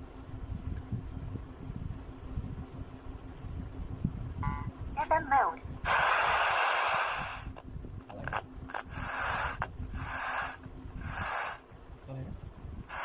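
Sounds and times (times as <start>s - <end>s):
radio static hiss: 5.0s - 11.6s.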